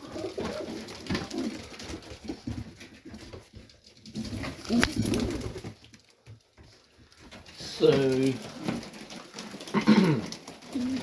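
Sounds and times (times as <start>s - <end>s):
pigeons cooing: 0.0s - 2.6s, 4.1s - 5.8s, 8.4s - 11.0s.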